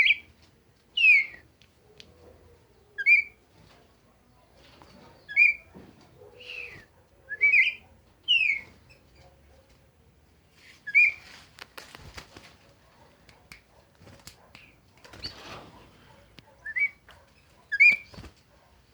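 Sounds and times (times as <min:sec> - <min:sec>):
bird whistling: 0:05.3 - 0:05.6, 0:06.4 - 0:08.6, 0:16.6 - 0:17.0.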